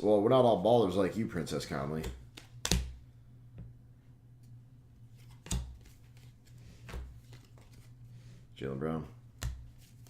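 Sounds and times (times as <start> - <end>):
faint steady hum: 0.0 - 10.0
cards being handled: 5.1 - 8.1, 9.3 - 10.0.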